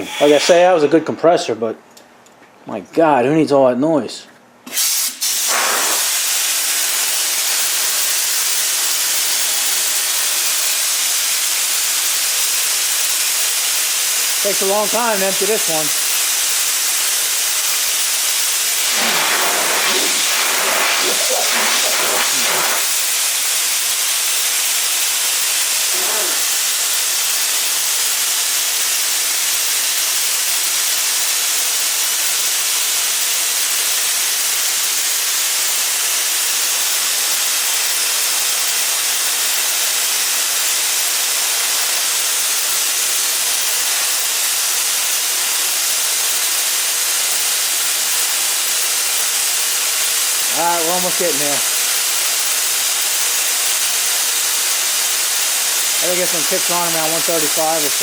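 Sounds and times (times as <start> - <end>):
compressed air hissing: 4.7 - 27.6, 41.4 - 58.0.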